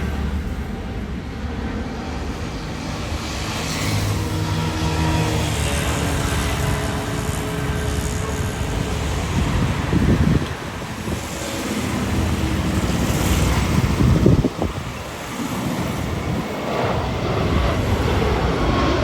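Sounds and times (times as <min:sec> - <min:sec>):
jet engine rushing: 0:00.0 - 0:19.0
wind buffeting microphone: 0:05.2 - 0:19.0.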